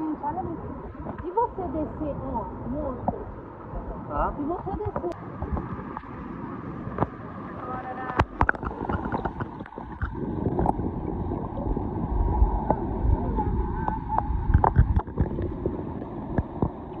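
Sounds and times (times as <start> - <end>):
river water flowing: 0.0 - 17.0
wind buffeting microphone: 0.0 - 17.0
small knocks and splashes: 8.0 - 10.8.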